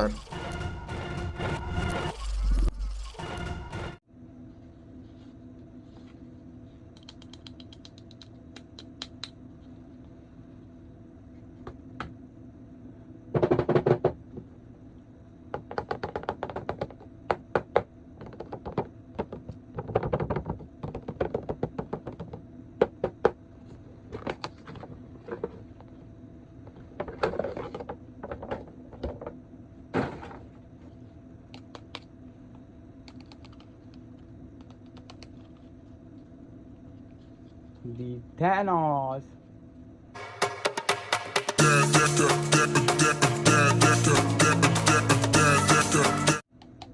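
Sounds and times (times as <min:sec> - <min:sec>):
faint steady hum: 0:04.0 - 0:40.2.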